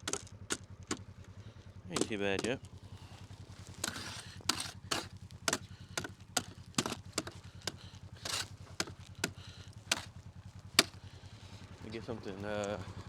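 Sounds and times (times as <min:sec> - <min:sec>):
steady low hum: 0:00.5 - 0:11.8
sharp knocks or crunches: 0:03.7 - 0:10.1, 0:10.8 - 0:11.0.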